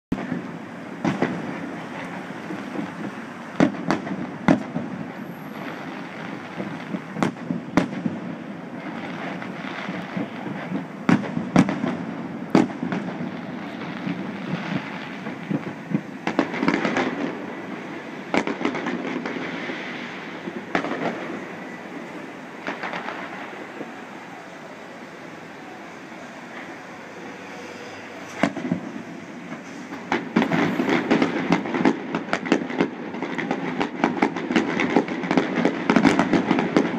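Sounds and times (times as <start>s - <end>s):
fireworks crackling: 0.1s - 36.9s
rumbling wash of noise: 0.2s - 33.2s
firework shells bursting: 12.6s - 24.3s, 24.9s - 36.9s.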